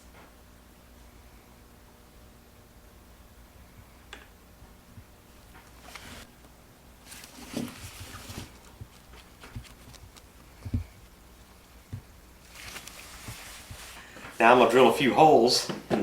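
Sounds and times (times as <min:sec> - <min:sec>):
faint rustling: 0:07.0 - 0:14.4.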